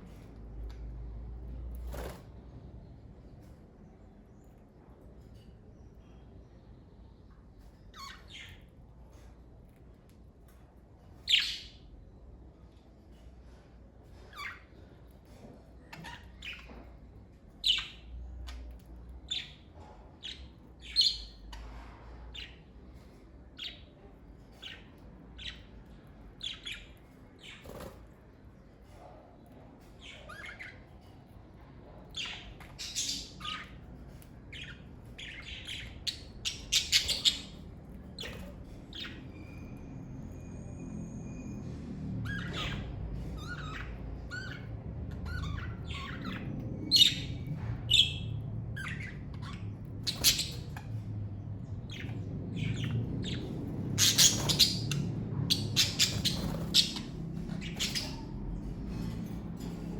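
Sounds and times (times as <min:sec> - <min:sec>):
budgerigars chirping and squawking: 0:07.6 - 0:09.3, 0:11.2 - 0:11.8, 0:14.2 - 0:16.9, 0:17.6 - 0:28.0, 0:29.8 - 0:31.1, 0:32.1 - 0:40.4, 0:41.3 - 0:59.9.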